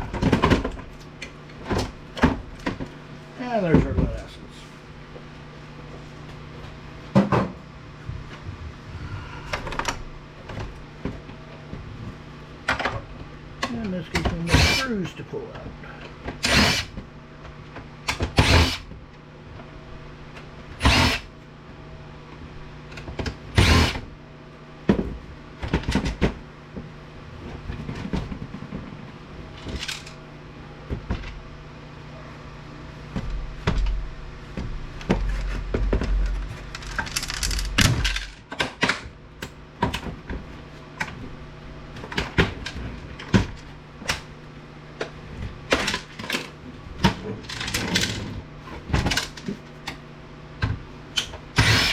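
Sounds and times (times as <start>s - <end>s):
steady low hum: 0.0s - 51.9s
tools and parts clattering: 35.2s - 39.0s.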